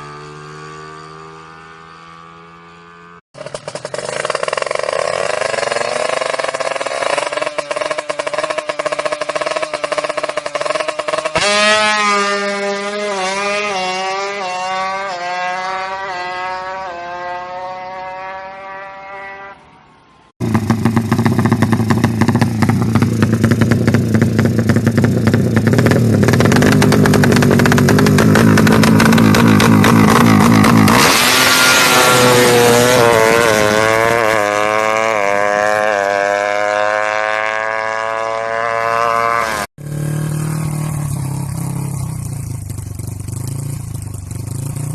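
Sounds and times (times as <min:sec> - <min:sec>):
motorcycle engine at high revs: 0:00.0 - 0:19.7, 0:20.4 - 0:44.9
motorcycle engine accelerating: 0:00.0 - 0:44.9.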